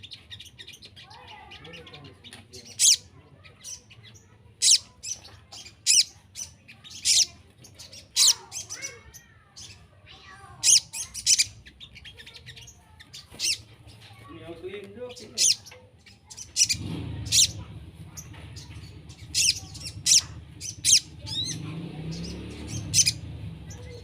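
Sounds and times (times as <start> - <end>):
bird high-pitched calls: 0.0 - 14.2, 15.1 - 24.0
bird chirps and twitters: 0.0 - 14.4, 15.0 - 24.0.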